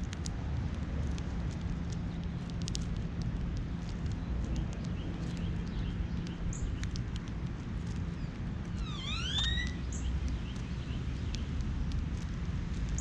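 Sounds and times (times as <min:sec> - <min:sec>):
bird chips and ticks: 0:00.0 - 0:13.0
steady low rumble: 0:00.0 - 0:13.0
rising whistled bird notes: 0:08.8 - 0:10.0.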